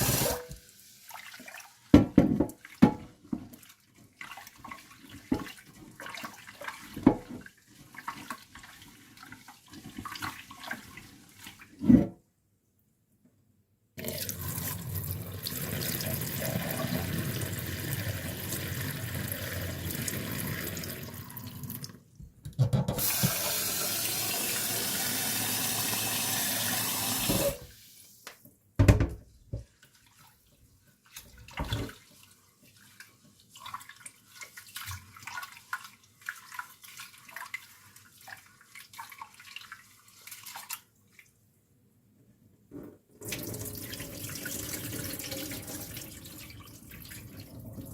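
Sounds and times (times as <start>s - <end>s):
water running from a tap: 0.0s - 1.6s, 14.0s - 22.0s, 23.0s - 28.0s, 43.2s - 47.9s.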